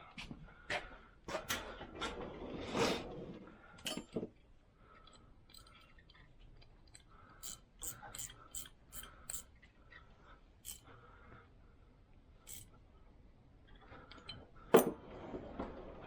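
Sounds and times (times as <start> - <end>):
small metallic clicks: 5.0 - 10.0, 10.6 - 10.9.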